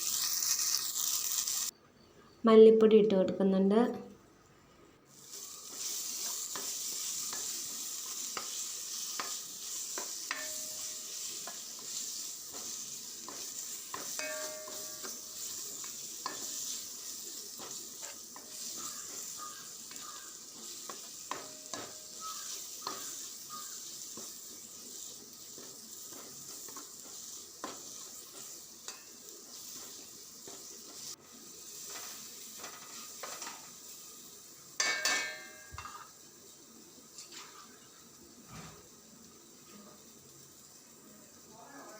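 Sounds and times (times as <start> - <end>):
food sizzling in a pan: 0.0 - 1.8, 5.0 - 41.9
spoon scraping a pan: 5.1 - 33.8, 34.8 - 36.2, 37.2 - 37.8.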